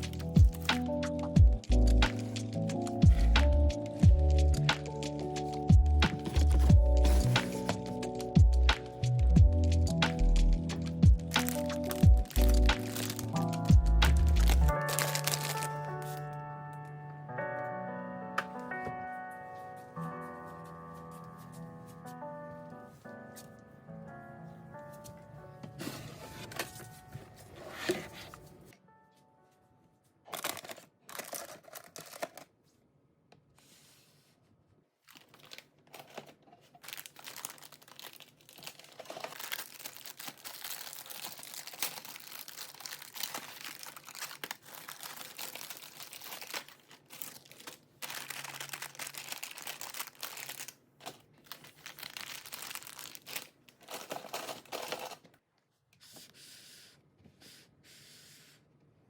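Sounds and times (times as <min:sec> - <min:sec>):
plastic bags rustling: 0:11.4 - 0:16.3, 0:30.3 - 0:32.3, 0:35.0 - 0:55.3.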